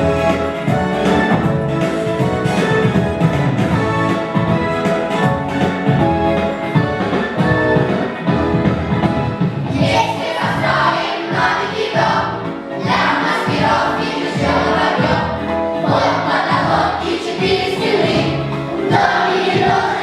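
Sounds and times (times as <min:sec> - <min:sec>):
music with steady beat: 0:00.0 - 0:20.0
children singing in chorus: 0:09.8 - 0:20.0.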